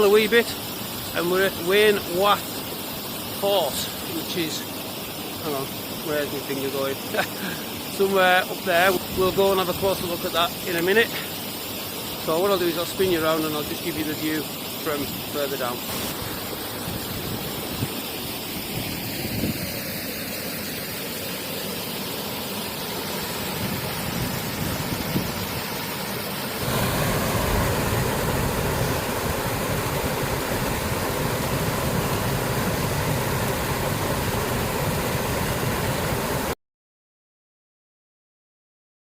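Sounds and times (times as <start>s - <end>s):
waterfall rushing: 0.0s - 36.6s.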